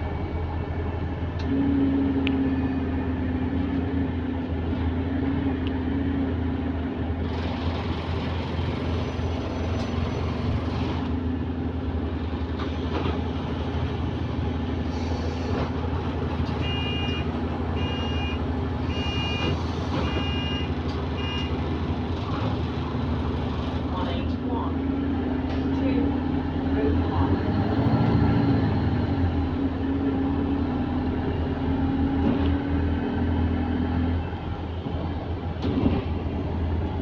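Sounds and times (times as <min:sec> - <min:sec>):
bus engine hum: 0:00.0 - 0:37.0
road noise: 0:00.0 - 0:37.0
two-tone beeps: 0:16.6 - 0:17.2, 0:17.8 - 0:21.5.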